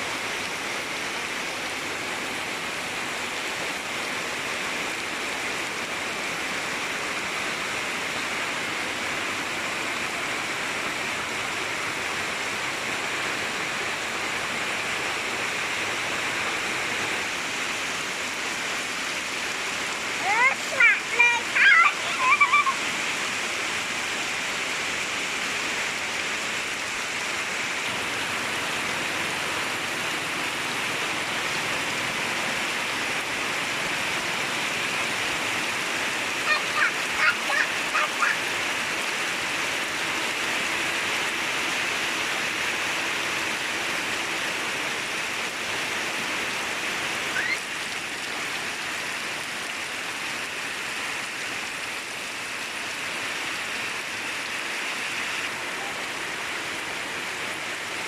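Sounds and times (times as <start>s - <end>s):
heavy rain hiss: 0.0s - 58.0s
short pitched calls: 47.4s - 47.6s.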